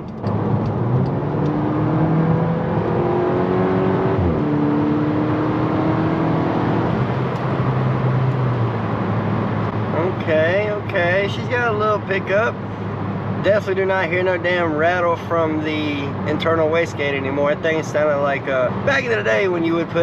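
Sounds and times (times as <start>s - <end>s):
car engine accelerating: 0.0s - 13.5s.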